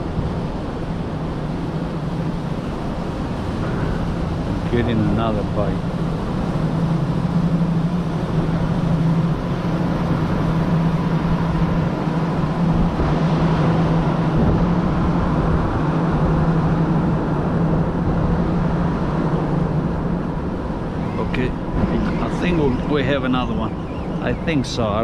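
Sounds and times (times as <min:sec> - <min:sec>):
background rush: 0:00.0 - 0:25.0
engine drone: 0:00.0 - 0:25.0.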